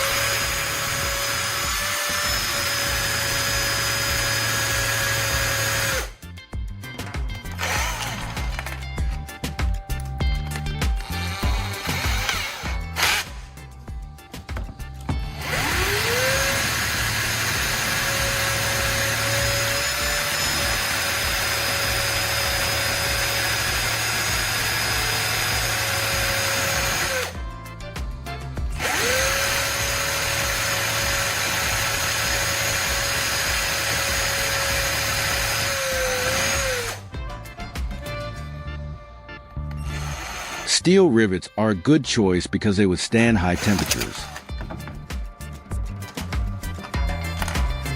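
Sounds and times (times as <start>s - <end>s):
power drill whining: 0.0s - 6.2s, 7.5s - 8.9s, 10.9s - 13.6s, 15.2s - 27.4s, 28.8s - 37.1s, 39.8s - 40.9s, 43.4s - 44.8s.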